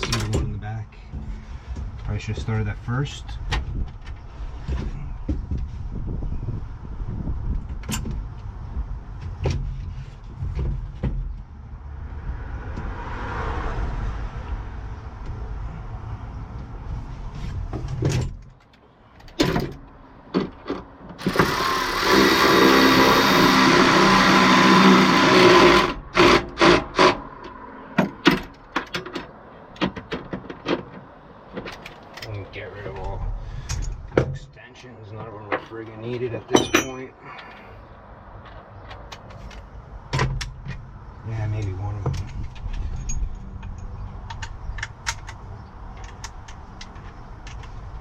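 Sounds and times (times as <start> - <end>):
low rumble: 10.3 - 17.9
power drill running under load: 21.2 - 26.7
sharp metallic knocks: 36.5 - 37.1.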